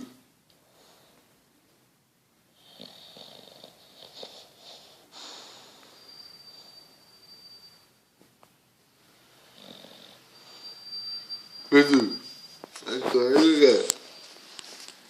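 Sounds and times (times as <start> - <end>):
dog snoring: 2.5 - 6.8, 9.5 - 10.9
thin high whistle: 5.2 - 8.0, 10.3 - 14.8.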